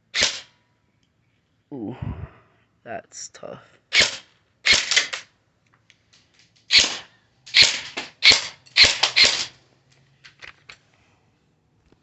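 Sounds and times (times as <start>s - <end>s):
airsoft gun shots: 0.1s - 0.5s, 3.9s - 5.2s, 6.7s - 9.5s.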